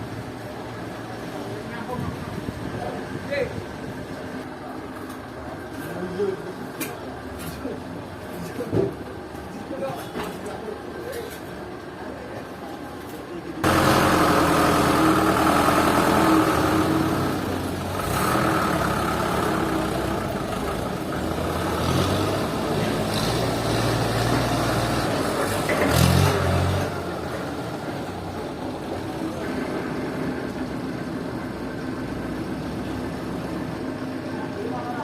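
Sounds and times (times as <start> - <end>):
heavy machinery engine running: 13.4 - 35.0.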